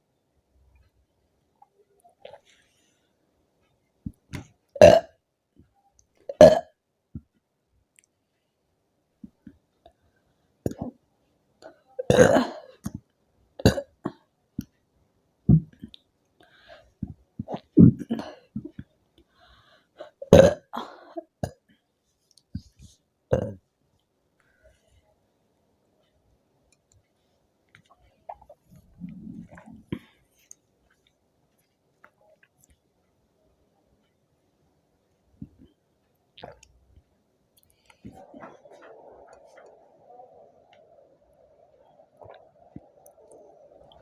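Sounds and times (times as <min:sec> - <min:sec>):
woman burping: 0:04.8 - 0:05.1, 0:06.3 - 0:06.7, 0:12.0 - 0:12.7, 0:20.2 - 0:21.6, 0:23.3 - 0:23.6.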